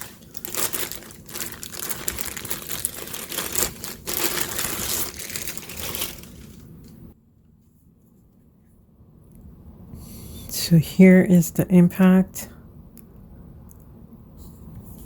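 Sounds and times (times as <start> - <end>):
packaging crinkling: 0.0 - 7.1.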